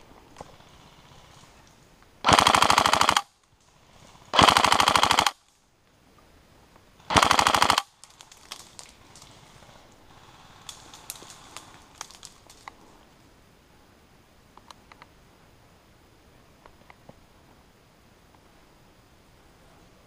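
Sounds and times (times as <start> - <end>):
airsoft rifle firing bursts: 2.2 - 3.3, 4.3 - 5.4, 7.1 - 8.0
faint clicks: 10.6 - 12.9, 14.5 - 15.1.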